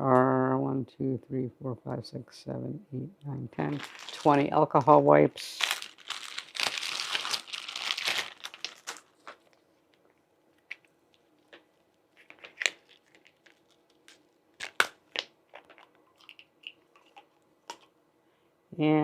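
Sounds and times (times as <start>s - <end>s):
wrapper crinkling: 3.6s - 17.9s.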